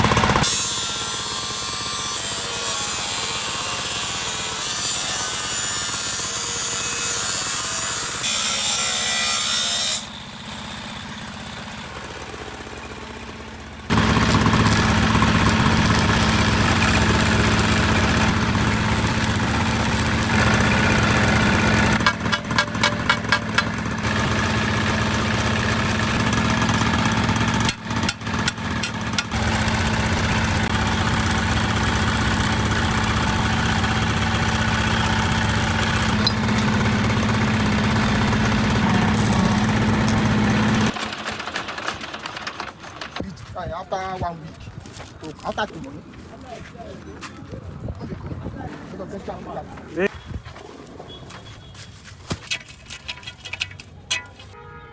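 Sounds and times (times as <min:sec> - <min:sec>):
engine running steadily: 0:00.0 - 0:00.5, 0:10.1 - 0:43.2
rasping filing tool: 0:00.1 - 0:10.2, 0:13.9 - 0:30.7.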